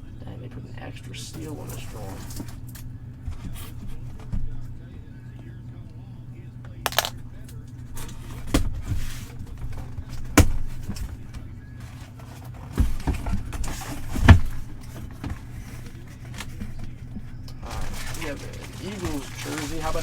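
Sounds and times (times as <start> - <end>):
packaging rustling: 6.9 - 7.1, 17.6 - 20.0.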